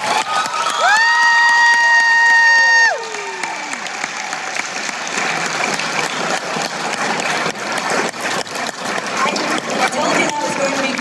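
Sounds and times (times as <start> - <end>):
people clapping: 0.0 - 11.0.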